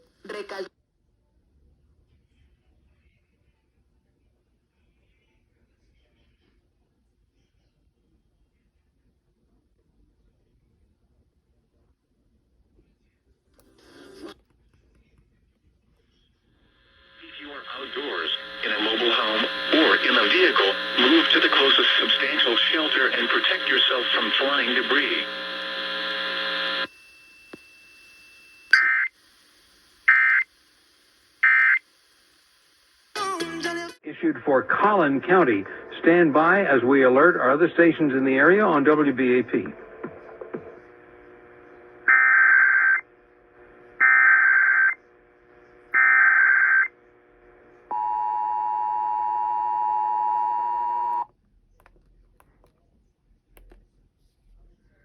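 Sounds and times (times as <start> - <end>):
buzzy digital data tones: 17.2 - 33.2
click: 53.6 - 53.8.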